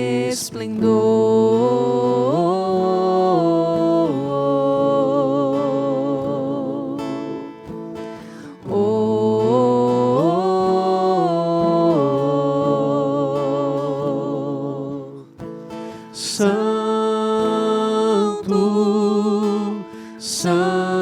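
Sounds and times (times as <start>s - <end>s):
acoustic guitar: 0.0s - 21.0s
person singing with vibrato: 0.0s - 21.0s
breath: 8.0s - 8.7s, 15.4s - 16.2s, 19.8s - 20.2s.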